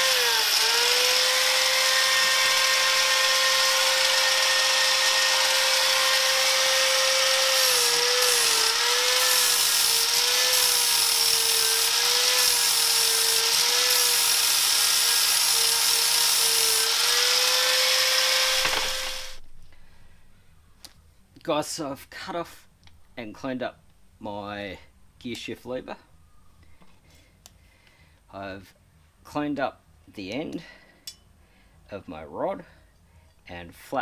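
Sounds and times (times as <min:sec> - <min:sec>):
electric grinder on metal: 0:00.0 - 0:19.4.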